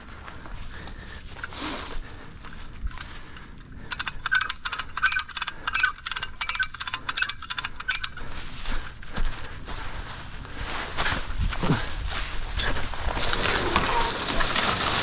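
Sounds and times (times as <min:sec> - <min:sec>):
ratchet-like mechanical clicking: 0:03.9 - 0:08.2.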